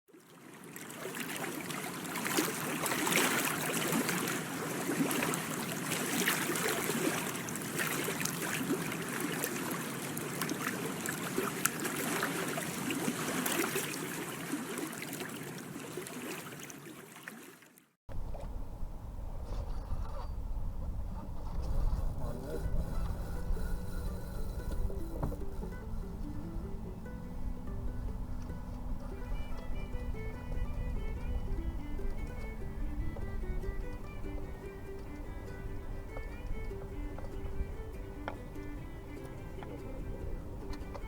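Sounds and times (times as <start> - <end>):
small water splashes: 0.1 - 18.0
water trickling and lapping: 0.1 - 18.7, 19.3 - 41.0.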